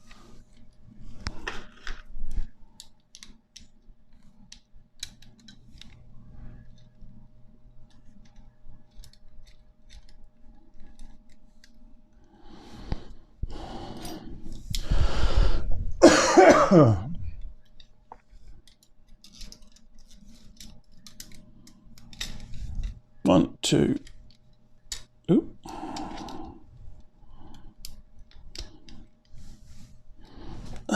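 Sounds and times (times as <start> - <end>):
person coughing: 16.0 - 17.2.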